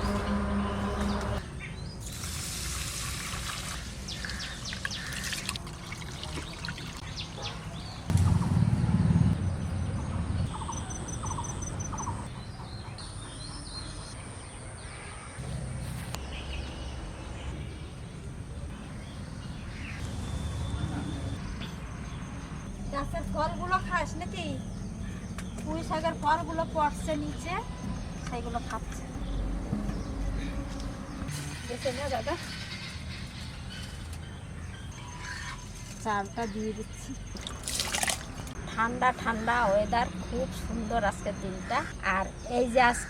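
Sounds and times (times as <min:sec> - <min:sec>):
birds calling: 0:00.0 - 0:02.0, 0:04.0 - 0:08.7, 0:09.3 - 0:43.0
low rumble: 0:08.1 - 0:12.3.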